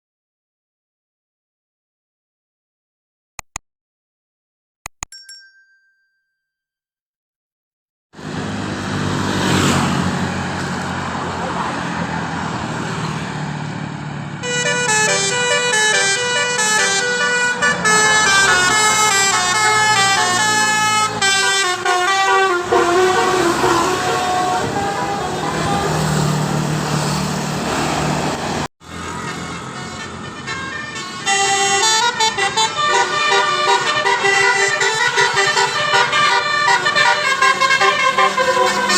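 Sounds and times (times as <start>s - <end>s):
bus engine and road noise: 8.2s - 38.9s
musical bus horn playing a tune: 14.4s - 26.5s, 28.9s - 38.9s.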